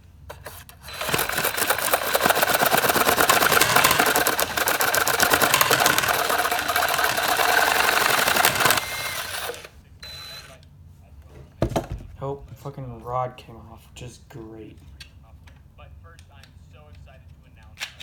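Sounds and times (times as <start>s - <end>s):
toy chainsaw clattering rattle: 0.9s - 9.7s.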